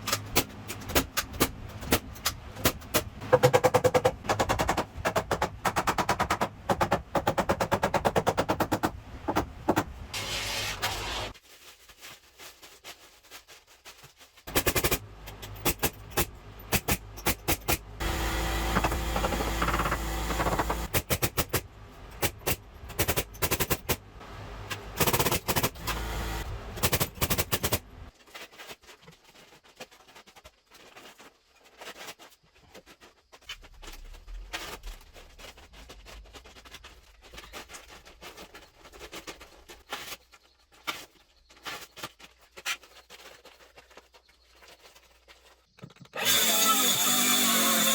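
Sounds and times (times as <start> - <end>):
rapid repeated impacts: 0.0 - 10.1
steady machine noise: 17.8 - 21.0, 23.6 - 27.0.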